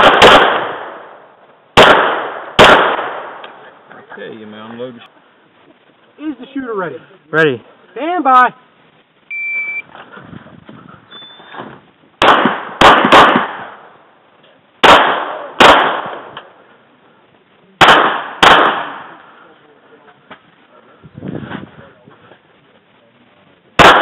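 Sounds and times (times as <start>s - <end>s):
pistol shots with reverberation: 0.0s - 1.2s, 1.8s - 3.6s, 12.2s - 13.9s, 14.8s - 16.3s, 17.8s - 19.2s, 23.8s - 24.0s
shot timer beep: 9.3s - 9.8s.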